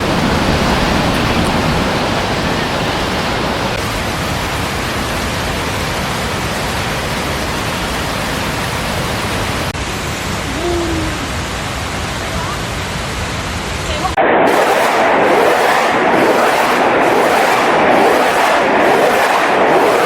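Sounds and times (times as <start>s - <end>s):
rushing water: 0.0s - 20.0s.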